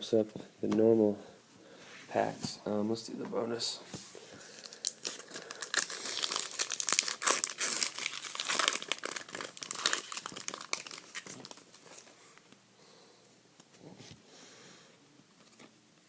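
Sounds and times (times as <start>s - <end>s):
plastic wrapper tearing and crinkling: 4.5s - 12.1s.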